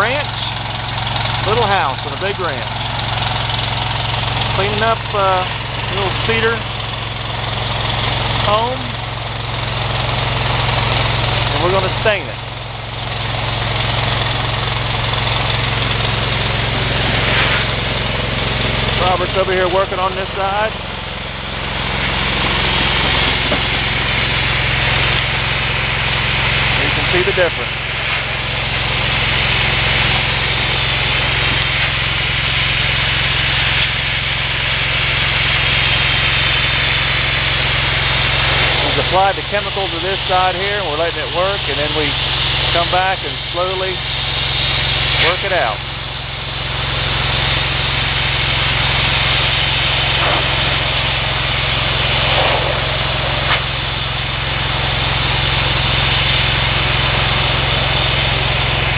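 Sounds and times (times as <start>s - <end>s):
high-pressure water spray hissing: 0.0s - 58.9s
pressure washer engine running: 0.0s - 58.9s
water spray hissing: 15.1s - 20.4s, 44.0s - 58.9s.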